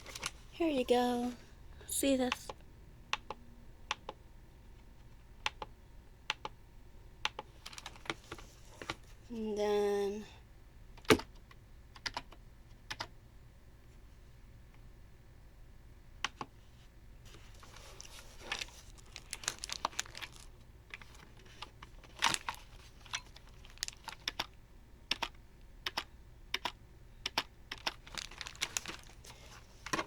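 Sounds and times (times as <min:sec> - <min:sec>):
keyboard keystroke clicks: 0:25.1 - 0:28.0.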